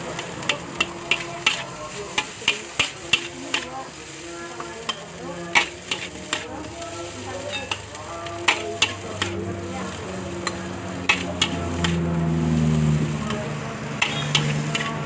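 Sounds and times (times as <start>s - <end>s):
rice sizzling in a wok: 0.0s - 15.0s
metal spatula clanking on wok: 0.2s - 3.8s, 4.6s - 6.8s, 7.4s - 12.0s, 13.2s - 15.0s.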